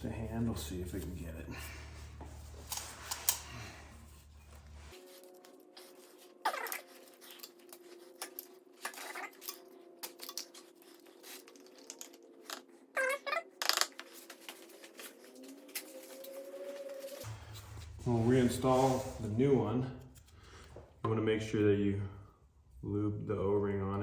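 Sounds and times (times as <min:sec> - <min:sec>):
hands clicking and scraping parts: 0:02.2 - 0:04.8, 0:06.5 - 0:12.7.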